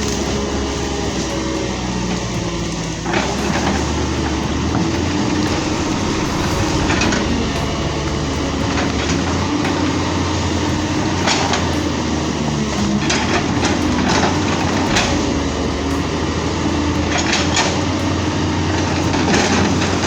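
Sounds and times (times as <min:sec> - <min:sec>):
diesel engine running: 0:03.9 - 0:17.3.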